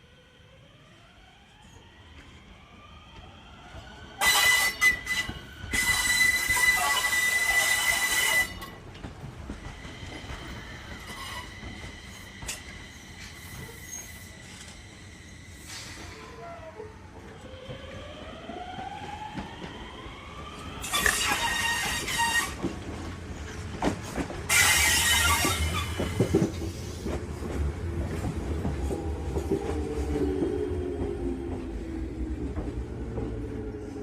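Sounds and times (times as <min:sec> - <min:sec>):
high-pitched wheel squeal: 0:11.0 - 0:12.5.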